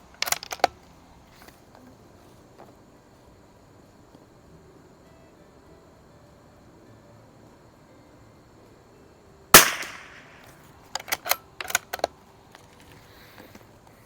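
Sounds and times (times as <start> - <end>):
metallic clicks of rifle bolt: 0.2 - 0.8, 9.6 - 13.5
rifle shot with echo: 9.6 - 10.5.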